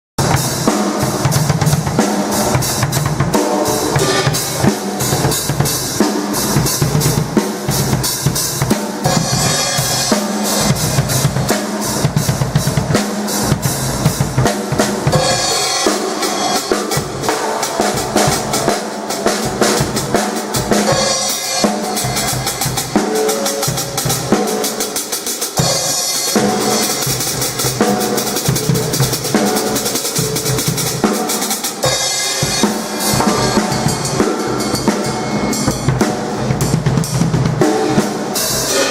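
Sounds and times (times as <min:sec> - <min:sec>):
bass drum: 0:00.2 - 0:15.6
cymbals washing: 0:00.2 - 0:38.9
snare drum and rimshots: 0:00.2 - 0:38.9.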